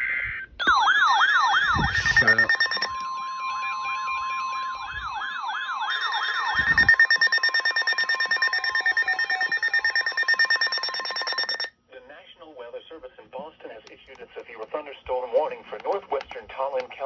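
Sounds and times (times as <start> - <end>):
siren wailing up and down: 0.0 - 11.7
fast pulsing alarm: 0.6 - 11.7
steady alert tone: 0.6 - 11.7.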